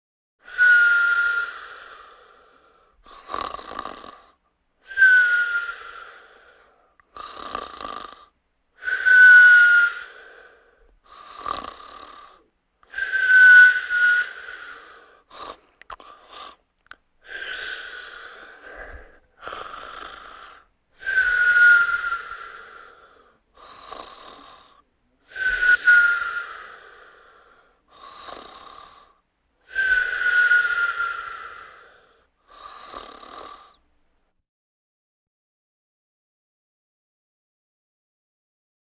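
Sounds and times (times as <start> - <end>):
snoring with a whistle: 0.4 - 16.6, 17.2 - 33.8.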